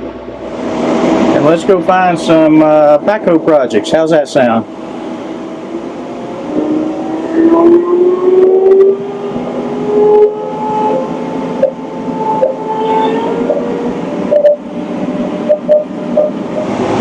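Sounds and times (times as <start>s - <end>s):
tractor engine revving: 0.0s - 17.0s.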